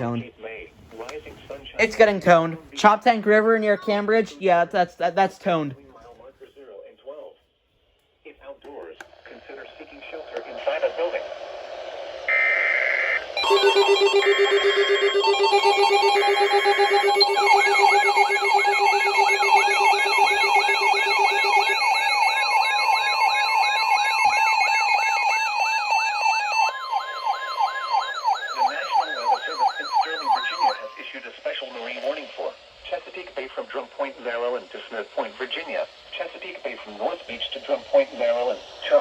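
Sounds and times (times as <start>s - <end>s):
pulsing alarm tone: 12.2s - 31.1s
screeching data bursts: 12.3s - 31.2s
rising and falling warble: 12.4s - 31.0s
steady alert tone: 13.4s - 31.1s.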